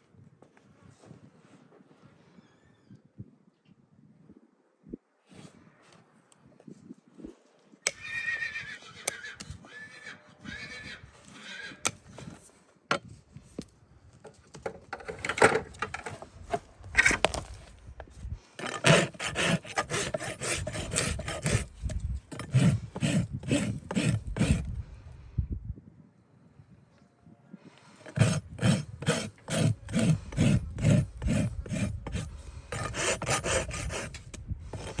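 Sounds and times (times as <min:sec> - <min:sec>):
horse whinnying: 0:07.9 - 0:11.9
rough scraping strokes: 0:15.1 - 0:25.0, 0:27.9 - 0:35.0.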